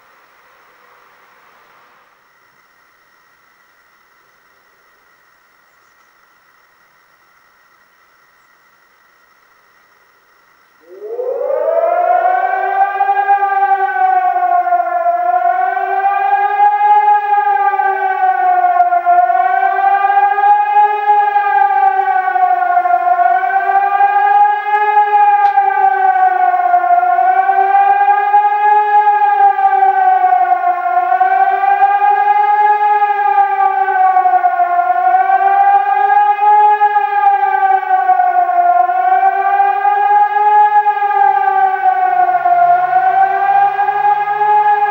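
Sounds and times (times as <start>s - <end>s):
warning siren wailing: 10.5s - 44.9s.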